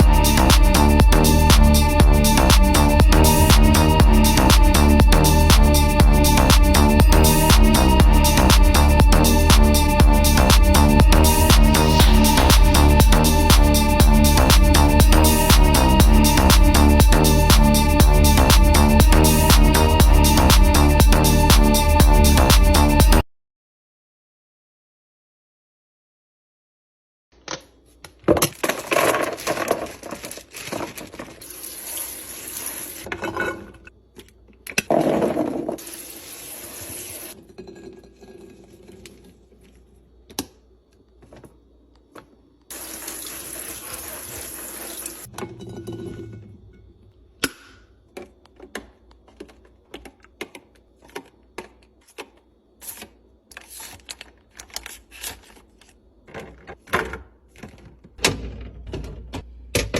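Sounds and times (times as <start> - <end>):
liquid pouring into container: 42.7 - 45.3.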